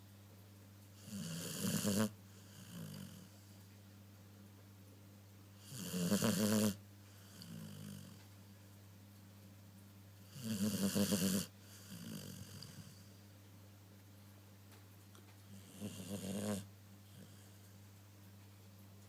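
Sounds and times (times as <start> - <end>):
dog snoring: 1.0 - 3.6, 5.6 - 8.3, 10.2 - 13.2, 15.5 - 17.8.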